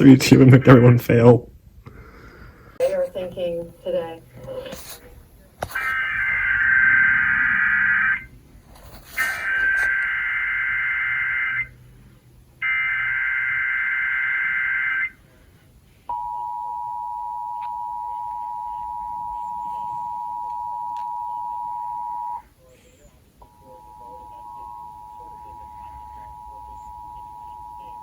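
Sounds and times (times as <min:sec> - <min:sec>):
warbling digital data bursts: 0:05.8 - 0:08.3
steady two-tone attention signal: 0:16.1 - 0:22.4, 0:23.4 - 0:28.0.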